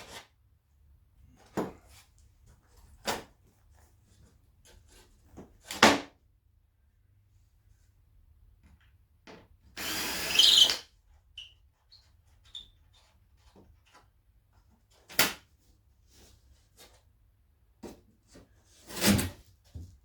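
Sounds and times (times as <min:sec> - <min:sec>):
cordless drill running: 0:09.8 - 0:10.8.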